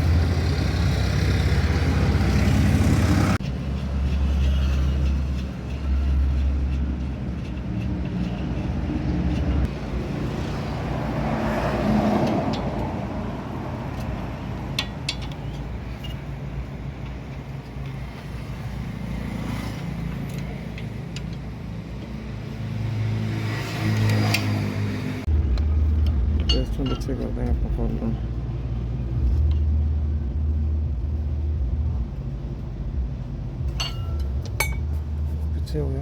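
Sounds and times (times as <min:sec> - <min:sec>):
low engine hum: 0:00.0 - 0:24.4, 0:25.0 - 0:36.0
road traffic: 0:00.0 - 0:36.0
light metallic clinks: 0:33.7 - 0:35.0.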